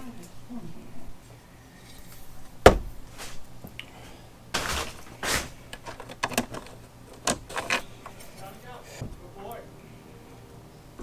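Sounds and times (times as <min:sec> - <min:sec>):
scraping rustles: 0:01.7 - 0:09.5
clicks and knocks of tools: 0:04.6 - 0:09.2.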